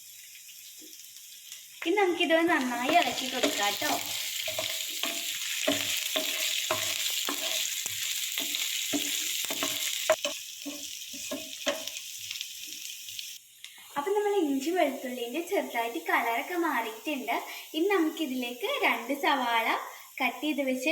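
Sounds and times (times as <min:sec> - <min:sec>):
garlic sizzling in oil: 0:00.0 - 0:20.9
utensil scraping and knocking pan: 0:02.9 - 0:11.9.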